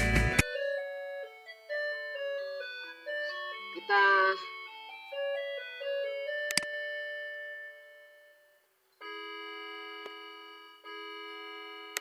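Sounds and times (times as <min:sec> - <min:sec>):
electronic keyboard melody: 0:00.0 - 0:12.0.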